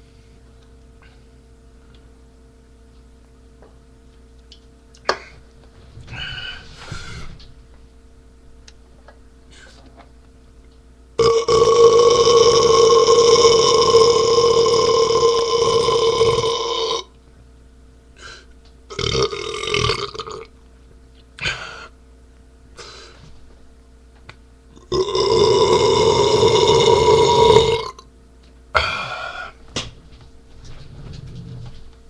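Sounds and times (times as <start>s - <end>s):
man belching: 11.2s - 17.1s, 18.9s - 20.5s, 24.8s - 28.0s.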